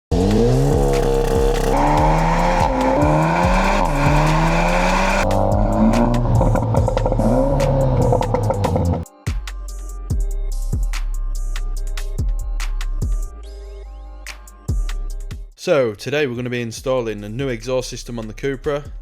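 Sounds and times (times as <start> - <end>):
car engine revving: 0.0 - 9.1.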